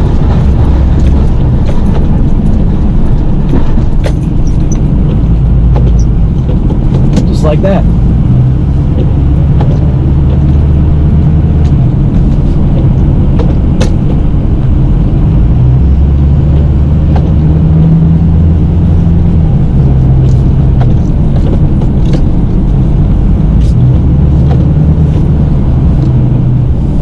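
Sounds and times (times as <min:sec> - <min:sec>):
truck engine droning: 0:00.0 - 0:27.0.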